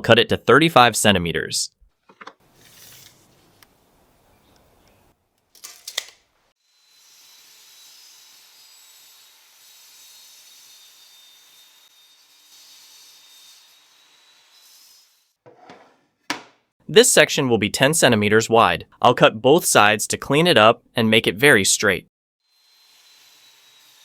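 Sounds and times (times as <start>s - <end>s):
power saw cutting wood: 6.6s - 15.6s, 22.5s - 24.0s
sharp knocks: 15.5s - 16.6s.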